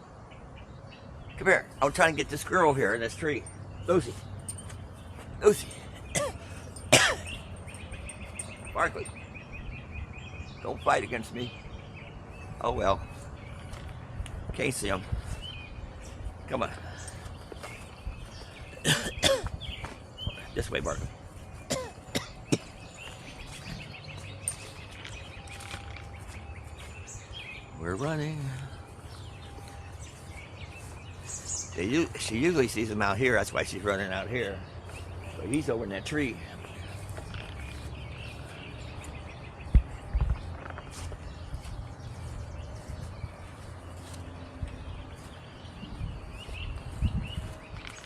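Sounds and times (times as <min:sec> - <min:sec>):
bird chirping: 0:00.0 - 0:48.0
outdoor background rush: 0:00.0 - 0:48.0
wind rumbling on microphone: 0:11.5 - 0:16.6, 0:17.4 - 0:21.8, 0:36.6 - 0:48.0.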